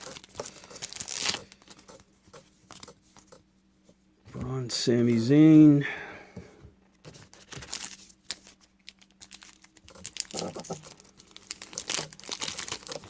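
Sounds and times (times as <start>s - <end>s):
foil wrapper crinkling: 0.0s - 2.0s, 7.1s - 13.0s.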